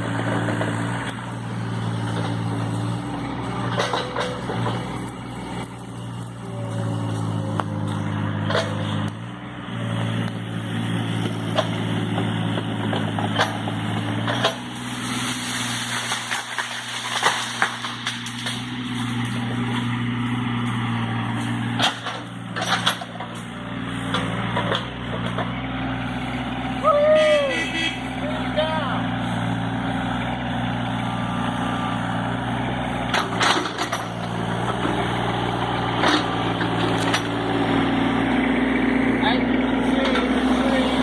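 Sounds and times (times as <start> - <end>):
excavator diesel engine: 0.0 - 41.0
sharp cracks and knocks: 15.8 - 19.9, 21.4 - 23.5.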